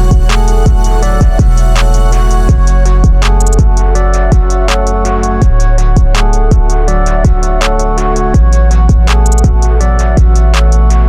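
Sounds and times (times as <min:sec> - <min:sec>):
background music with beat: 0:00.0 - 0:11.0
deep kick drum: 0:00.0 - 0:11.0
hi-hat ticks: 0:00.0 - 0:11.0.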